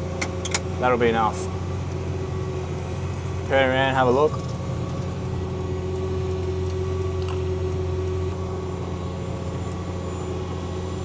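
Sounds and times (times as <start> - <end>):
tractor engine droning: 0.0 - 11.0.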